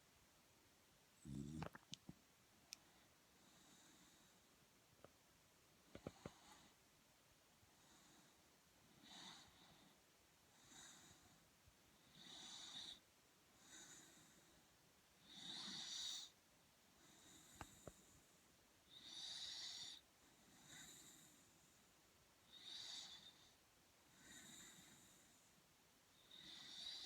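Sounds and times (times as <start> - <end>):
soft snoring: 1.2 - 2.0, 5.9 - 6.8, 7.8 - 11.4, 12.0 - 16.4, 18.9 - 27.0.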